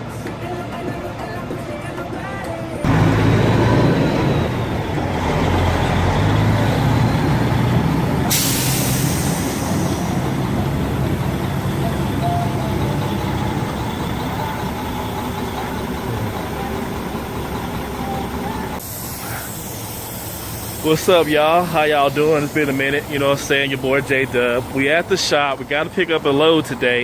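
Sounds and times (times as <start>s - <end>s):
diesel truck engine running: 0.0s - 27.0s
air brake hiss: 8.3s - 10.3s, 18.8s - 23.4s.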